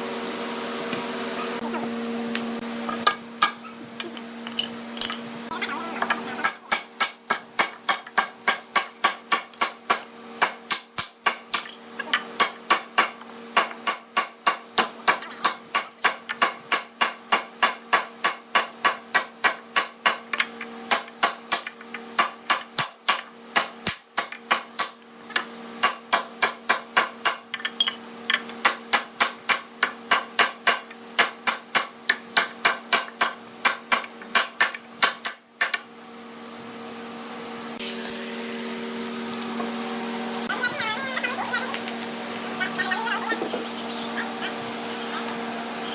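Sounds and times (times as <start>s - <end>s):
rapid hammering on wood: 6.4s - 11.7s, 12.4s - 25.0s, 25.8s - 27.5s, 28.4s - 35.9s.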